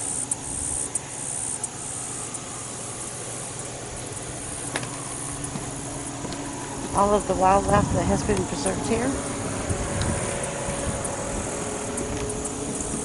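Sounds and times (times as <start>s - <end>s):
insect-like buzzing: 0.0s - 7.2s, 8.4s - 13.0s
outdoor background hiss: 0.0s - 13.0s.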